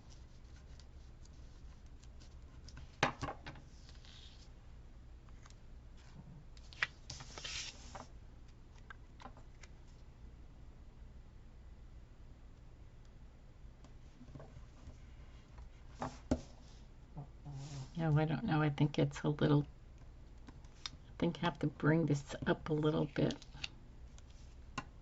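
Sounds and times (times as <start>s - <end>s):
low steady hum: 0.0s - 25.0s
paper rustling and scraping: 6.0s - 8.1s.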